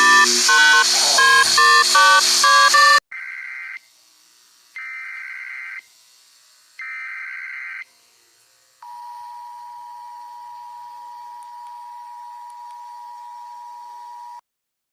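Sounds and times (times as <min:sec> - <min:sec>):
steady single-pitch tone: 0:00.0 - 0:03.0, 0:08.8 - 0:14.4
two-pitch buzzing data tones: 0:00.0 - 0:04.0, 0:08.8 - 0:14.4.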